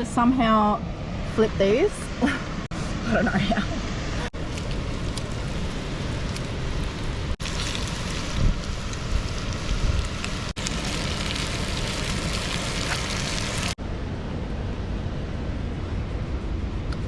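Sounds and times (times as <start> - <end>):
wind rumbling on microphone: 0.8 - 17.0
fish sizzling in a hot pan: 6.9 - 13.8.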